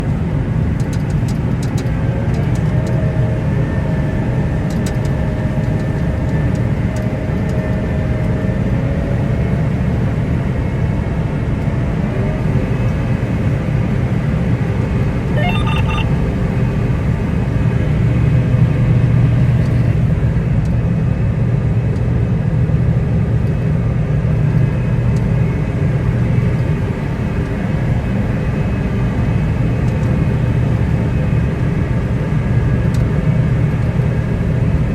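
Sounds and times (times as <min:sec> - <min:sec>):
brief high chirp: 0:15.4 - 0:16.1.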